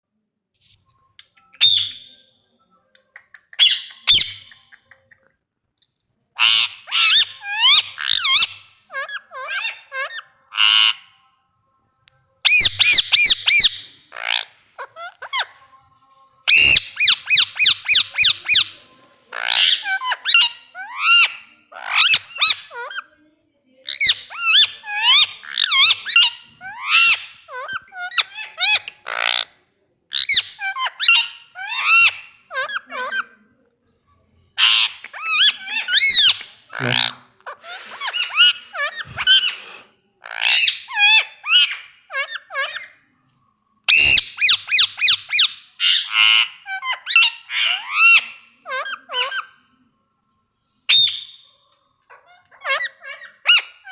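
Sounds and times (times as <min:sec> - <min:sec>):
parrot squawking and chattering: 0:01.2 - 0:02.1, 0:03.1 - 0:05.3, 0:06.4 - 0:11.1, 0:12.4 - 0:15.6, 0:16.5 - 0:23.1, 0:23.8 - 0:33.4, 0:34.6 - 0:43.0, 0:43.8 - 0:49.6, 0:52.0 - 0:53.9.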